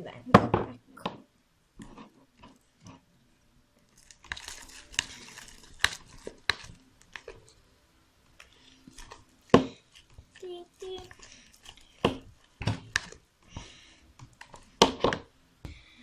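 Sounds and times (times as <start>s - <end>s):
slime squelching in a bowl: 3.8s - 7.6s, 8.3s - 15.2s
wet rustling: 3.8s - 7.7s, 8.3s - 15.0s.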